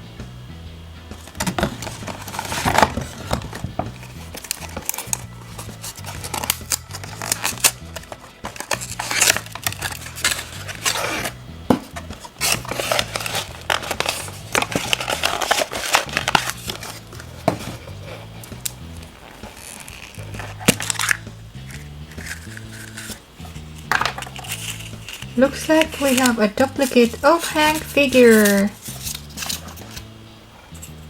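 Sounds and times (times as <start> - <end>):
light background music: 0.0 - 31.0
wrapper crinkling: 1.4 - 30.0
plastic capsule clicking: 20.0 - 23.2.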